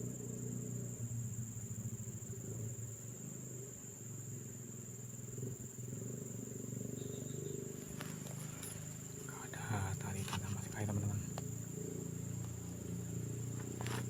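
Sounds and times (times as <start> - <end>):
insects droning: 0.0 - 14.0
low uneven rumble: 4.8 - 14.0.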